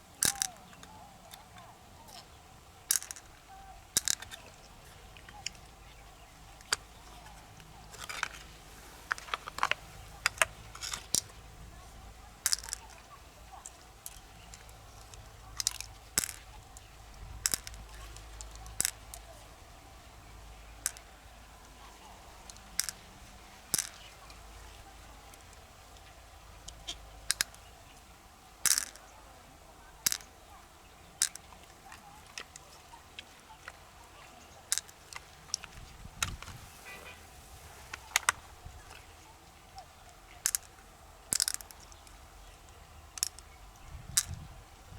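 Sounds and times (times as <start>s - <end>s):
hard shells clicking: 0.2s - 0.9s, 2.9s - 3.3s, 4.0s - 4.4s, 12.4s - 13.0s, 13.7s - 16.4s, 17.4s - 19.1s, 20.8s - 21.1s, 22.5s - 23.0s, 23.7s - 24.1s, 28.6s - 29.0s, 30.1s - 30.3s, 31.2s - 31.5s, 40.4s - 40.7s, 41.3s - 42.1s
shells scraping: 0.2s - 1.0s, 2.9s - 5.7s, 6.5s - 11.5s, 12.4s - 19.4s, 20.8s - 21.8s, 22.4s - 24.7s, 28.6s - 29.0s, 30.0s - 30.3s, 31.2s - 32.7s, 34.7s - 39.1s, 40.4s - 42.2s.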